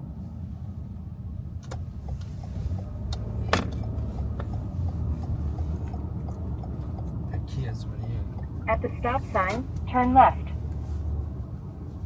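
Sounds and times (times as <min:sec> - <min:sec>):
car engine and road noise: 0:00.0 - 0:12.0
faint regular ticking: 0:01.6 - 0:09.9.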